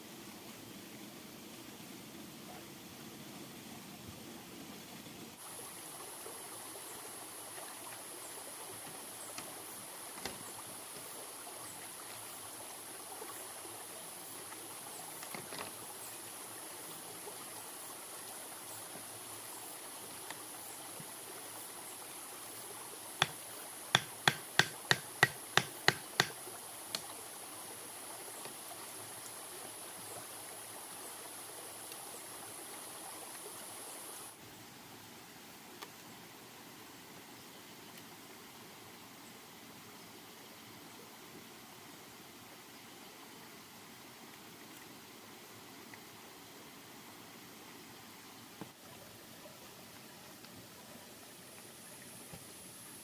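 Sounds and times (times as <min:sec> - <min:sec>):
running water hiss: 0:00.0 - 0:53.0
high insect drone: 0:05.4 - 0:34.4
sharp knocks: 0:23.2 - 0:26.4.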